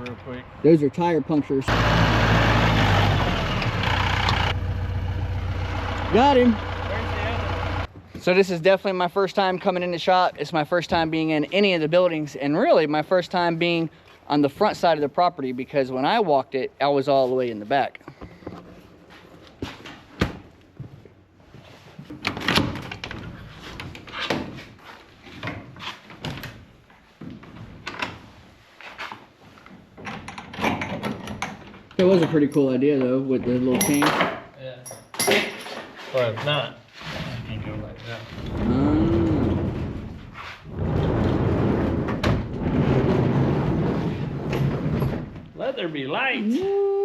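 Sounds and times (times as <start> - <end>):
door knocks rattles and scrapes: 39.3 - 45.6.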